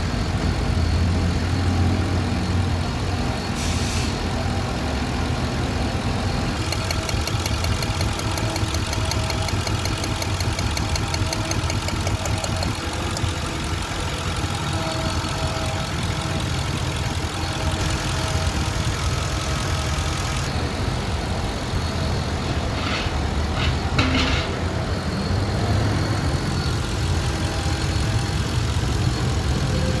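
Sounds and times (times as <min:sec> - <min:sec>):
car engine idling: 0:00.0 - 0:30.0
short clicks: 0:06.6 - 0:13.9.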